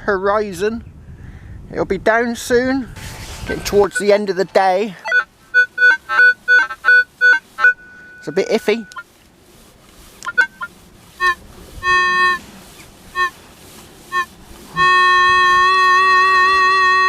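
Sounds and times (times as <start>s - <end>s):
metal detector long steady tone: 3.0s - 9.1s, 10.2s - 17.0s
metal detector beeps: 3.5s - 9.1s, 10.2s - 12.4s.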